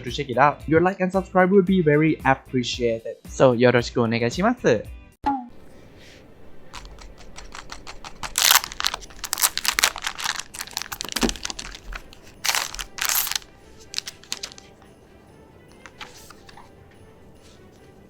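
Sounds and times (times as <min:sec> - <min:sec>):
packaging crinkling and rustling: 0:06.5 - 0:14.8, 0:15.8 - 0:16.7.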